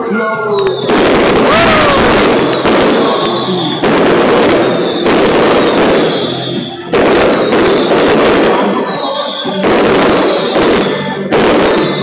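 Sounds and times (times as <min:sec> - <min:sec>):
fireworks bangs and crackles: 0:00.6 - 0:12.0
faint falling whistle: 0:02.1 - 0:03.9, 0:04.5 - 0:12.0.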